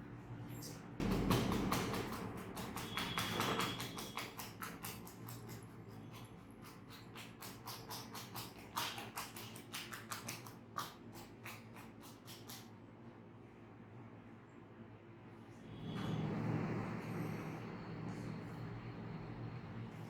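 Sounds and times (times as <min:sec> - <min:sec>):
rapid sharp tapping: 0:01.0 - 0:05.5.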